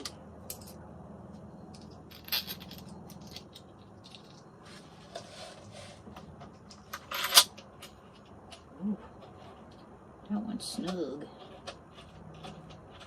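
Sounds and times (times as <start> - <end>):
metal parts clattering: 1.7 - 4.5, 6.7 - 8.0
small metal parts rattling: 1.7 - 4.5, 6.5 - 8.3.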